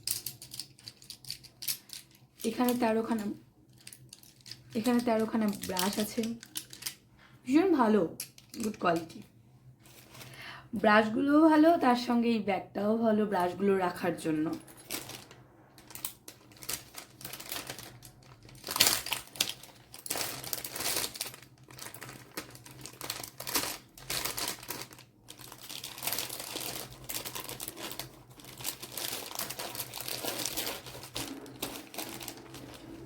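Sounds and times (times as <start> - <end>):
packaging crinkling and rustling: 0.0 - 7.1, 14.6 - 33.0.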